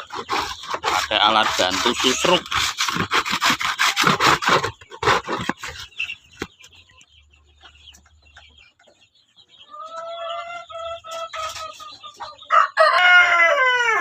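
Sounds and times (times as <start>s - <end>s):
scraping strokes: 0.0s - 6.2s
chicken calling: 0.0s - 14.0s.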